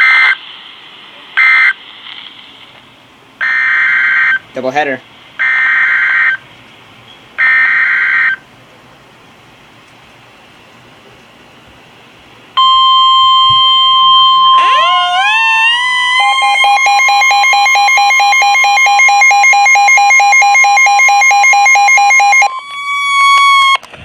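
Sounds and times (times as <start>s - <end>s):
faint static hiss: 0.0s - 14.7s
loud steady alarm tone: 3.4s - 4.4s, 5.4s - 6.4s, 12.6s - 23.8s
upward sweeping alarm tones: 12.6s - 23.8s
rapid repeating beeps: 16.1s - 22.5s.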